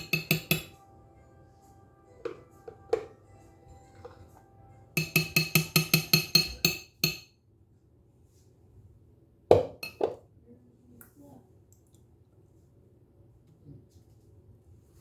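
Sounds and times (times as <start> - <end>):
spoon clinking against a bowl: 0.0 - 0.8, 5.0 - 7.3, 9.8 - 10.1.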